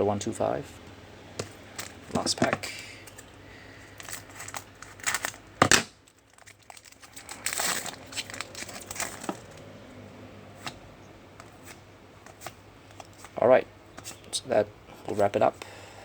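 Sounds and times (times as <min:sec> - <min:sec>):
wrapper crinkling: 0:04.0 - 0:09.7
wrapper ripping: 0:04.0 - 0:09.7.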